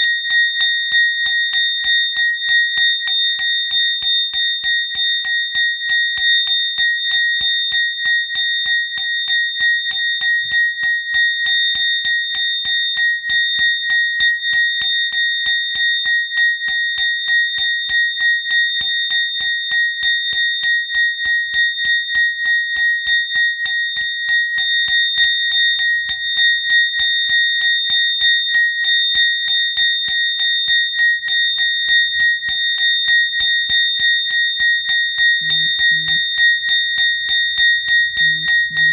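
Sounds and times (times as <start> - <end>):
small bell ringing rapidly: 31.9 - 38.9.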